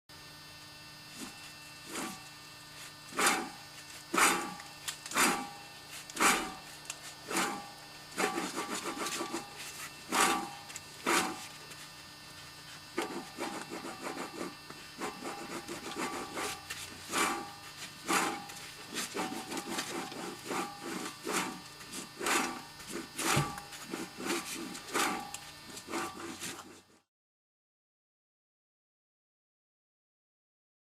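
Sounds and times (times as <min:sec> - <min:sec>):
faint steady hum: 0:00.1 - 0:26.8
wheel bearing grinding: 0:01.2 - 0:11.8, 0:12.9 - 0:26.8.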